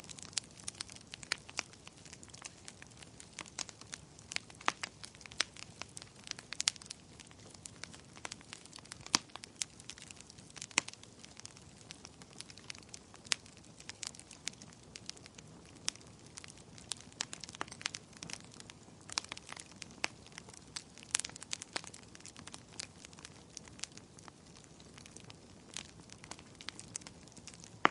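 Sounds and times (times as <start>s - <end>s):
wood fire crackling and popping: 0.0s - 27.9s.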